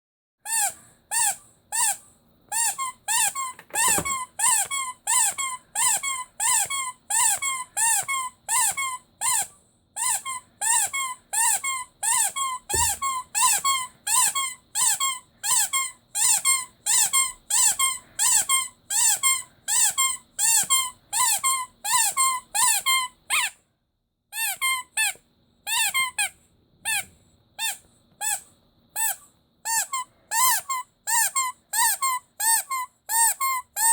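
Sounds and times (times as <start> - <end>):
squeaky rubber toy squeaking: 0.4 - 23.6, 24.3 - 33.9.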